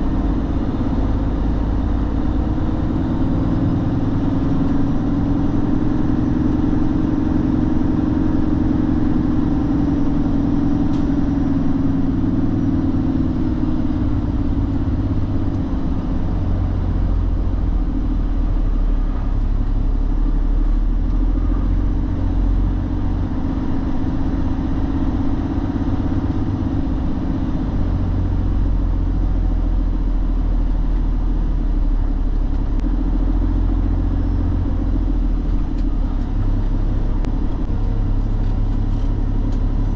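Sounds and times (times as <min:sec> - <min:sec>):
low road noise rumble: 0:00.0 - 0:39.9
truck diesel engine running: 0:00.0 - 0:39.9.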